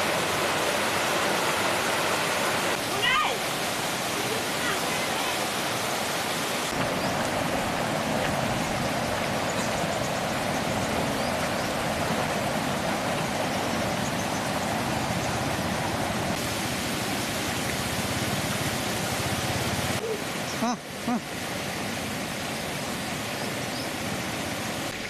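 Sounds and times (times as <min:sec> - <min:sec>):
fast-flowing flood water rushing: 0:00.0 - 0:25.0.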